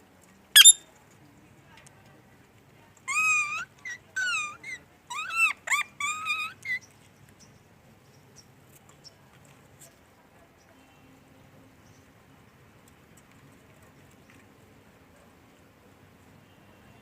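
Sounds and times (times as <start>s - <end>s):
parrot calling: 0.6s - 0.8s, 3.1s - 6.8s.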